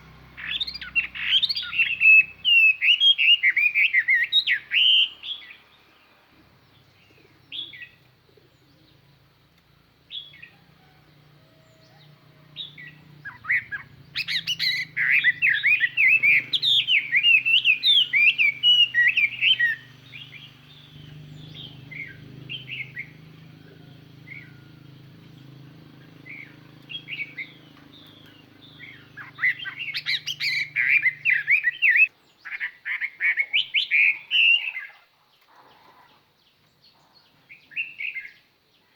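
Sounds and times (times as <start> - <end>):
bird singing whistled phrases: 0.4 - 5.6, 12.6 - 23.2, 26.2 - 35.0.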